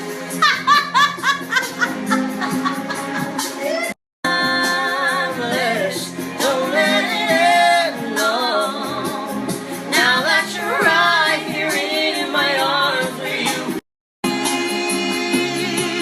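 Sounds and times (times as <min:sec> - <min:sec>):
instrumental backing track: 0:00.0 - 0:16.0
woman and man singing: 0:03.6 - 0:13.8.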